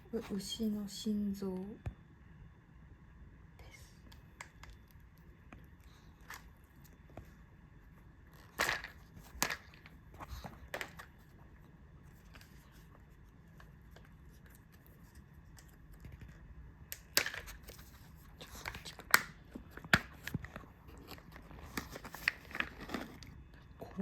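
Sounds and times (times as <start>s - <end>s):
dog chewing crunchy treat: 17.4s - 24.0s.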